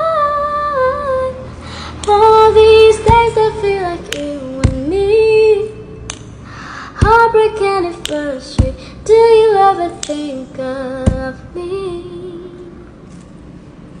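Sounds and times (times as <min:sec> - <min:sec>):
woman singing wordless notes: 0:00.0 - 0:06.1, 0:06.9 - 0:12.9
pop song: 0:00.0 - 0:12.8
sharp clicks: 0:02.0 - 0:02.2, 0:04.0 - 0:04.9, 0:06.1 - 0:06.4, 0:07.0 - 0:08.8, 0:09.9 - 0:10.4.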